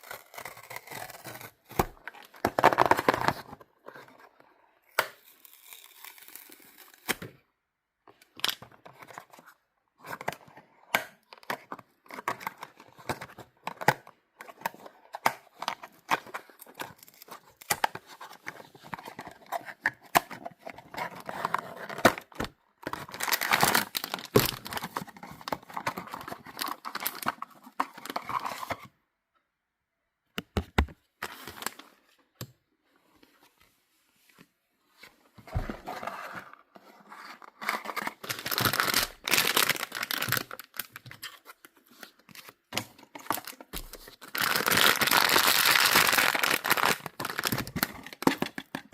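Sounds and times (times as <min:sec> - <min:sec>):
packaging tearing and rustling: 0:15.6 - 0:28.7, 0:37.5 - 0:48.9.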